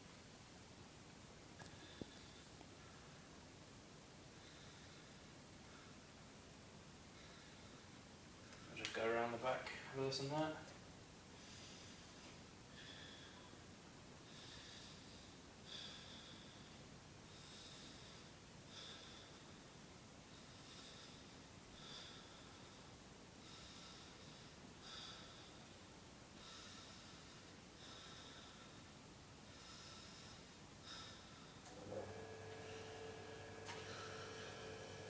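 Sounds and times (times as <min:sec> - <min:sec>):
slow deep breathing: 0:11.4 - 0:35.0.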